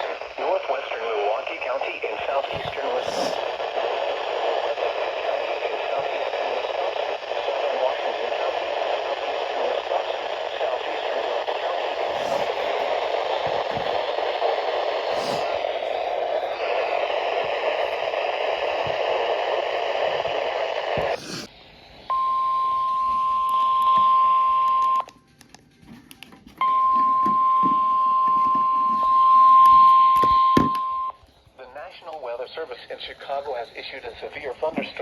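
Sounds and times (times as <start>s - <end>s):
radio hiss and static: 0.0s - 22.3s, 30.6s - 35.0s
steady warning alarm tone: 22.1s - 25.0s.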